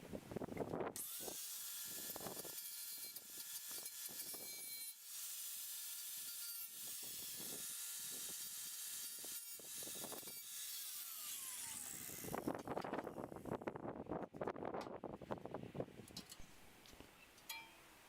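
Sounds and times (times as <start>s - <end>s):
angle grinder grinding metal: 1.0s - 12.7s.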